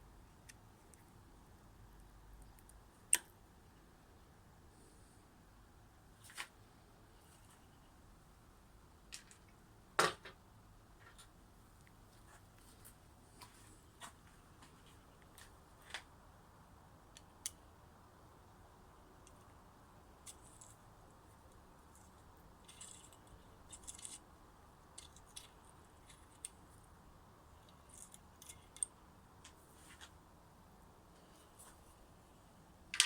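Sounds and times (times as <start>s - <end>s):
small metallic clicks and taps: 21.5s - 24.2s, 24.8s - 26.8s, 27.6s - 30.1s.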